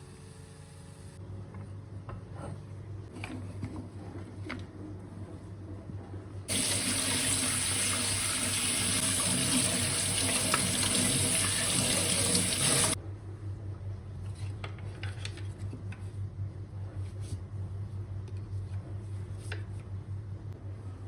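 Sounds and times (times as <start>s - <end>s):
tap running into sink: 6.5s - 13.0s.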